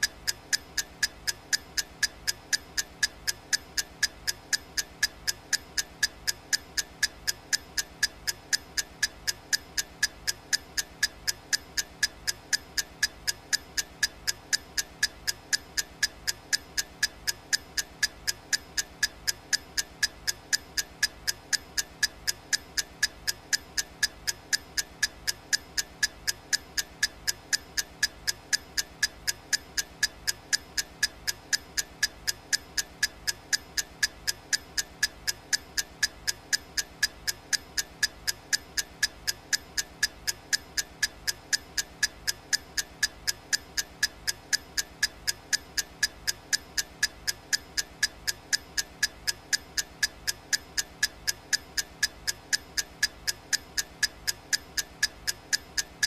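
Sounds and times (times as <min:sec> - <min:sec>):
clock ticking: 0:00.0 - 0:56.0.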